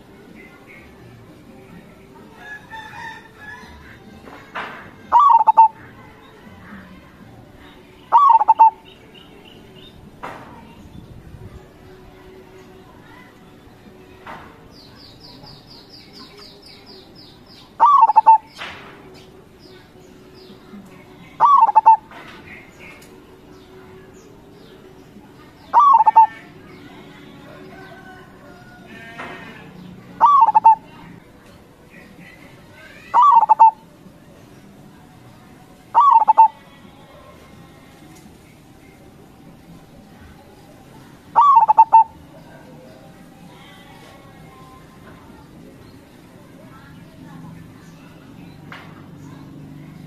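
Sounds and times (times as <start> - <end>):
zebra dove cooing: 5.1 - 5.8, 8.1 - 8.9, 17.8 - 18.5, 21.4 - 22.1, 25.7 - 26.5, 30.2 - 30.9, 33.0 - 33.8, 35.8 - 36.6, 41.3 - 42.2.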